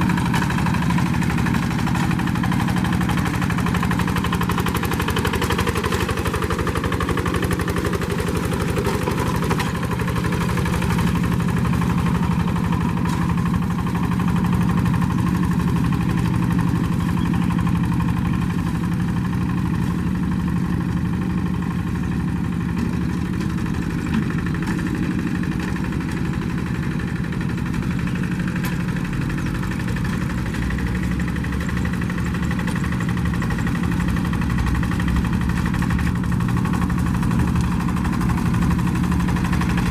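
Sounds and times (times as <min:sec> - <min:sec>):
diesel tractor engine running: 0:00.0 - 0:39.9.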